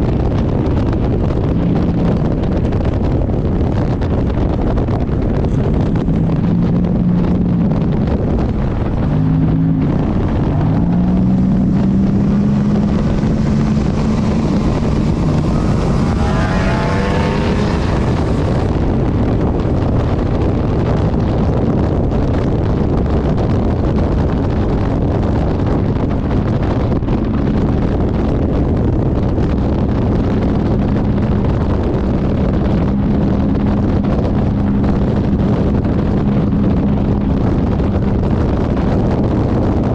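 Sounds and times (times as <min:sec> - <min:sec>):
race car engine at speed: 0:00.0 - 0:39.9
wind noise: 0:00.0 - 0:39.9
high rising engine-like note: 0:08.9 - 0:19.9.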